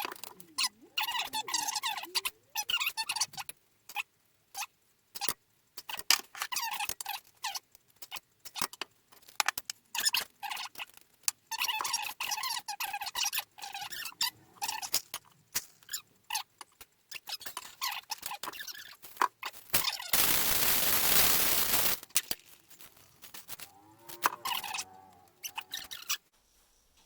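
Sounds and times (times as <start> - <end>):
steady rushing noise: 20.2 - 22.0.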